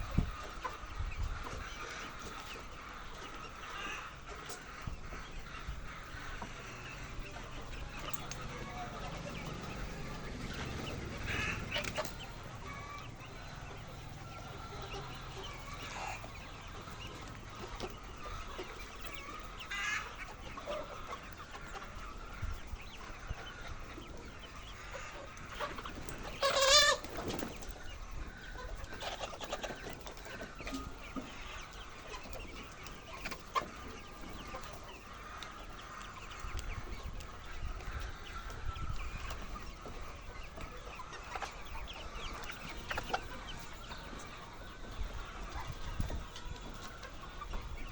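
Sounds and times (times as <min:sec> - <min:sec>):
hens clucking and calling: 0:00.0 - 0:47.9
loud hen call: 0:05.6 - 0:17.6, 0:18.2 - 0:22.2, 0:26.4 - 0:27.2.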